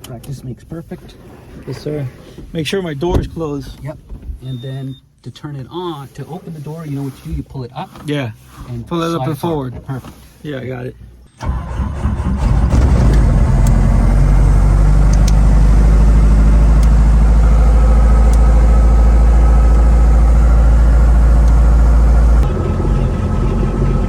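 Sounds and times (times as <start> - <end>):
helicopter engine running: 12.8 - 24.0.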